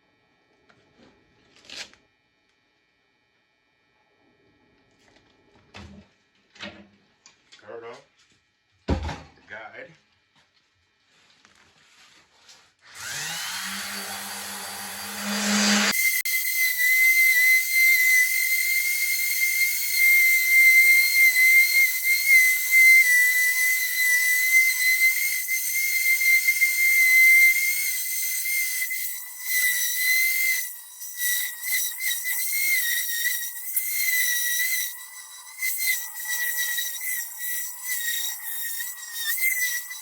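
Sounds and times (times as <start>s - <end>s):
orbital sander whining: 12.9s - 38.5s.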